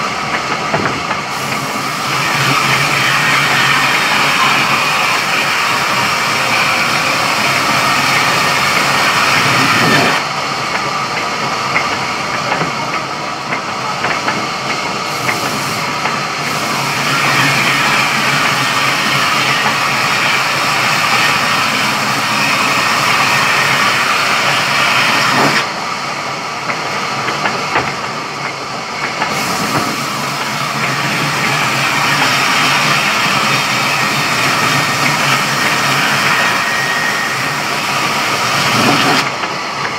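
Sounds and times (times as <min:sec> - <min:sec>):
saw cutting through log: 0:01.6 - 0:10.2, 0:16.4 - 0:25.7, 0:29.5 - 0:39.3.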